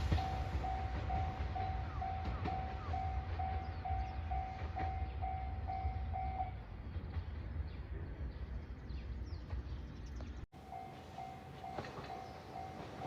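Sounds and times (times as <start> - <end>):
level-crossing warning bell ringing: 0.0 - 6.6, 10.5 - 13.0
low rumble of train: 0.0 - 13.0.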